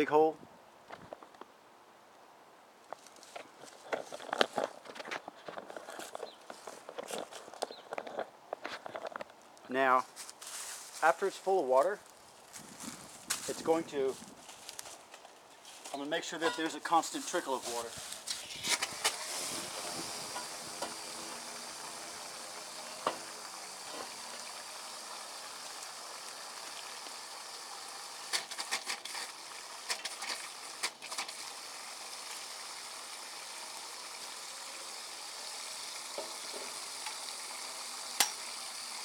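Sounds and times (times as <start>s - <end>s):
water running from a hose: 17.3s - 39.0s.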